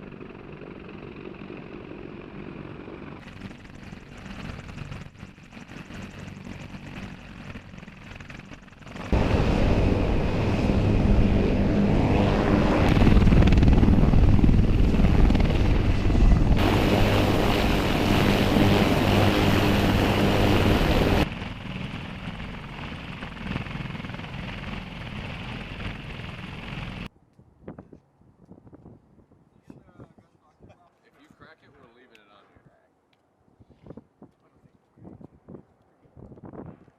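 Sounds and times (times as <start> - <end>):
helicopter rotor and turbine hum: 0.0 - 27.1.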